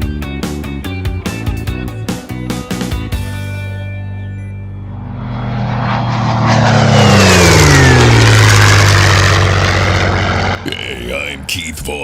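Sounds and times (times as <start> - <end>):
engine passing by: 4.6 - 11.4.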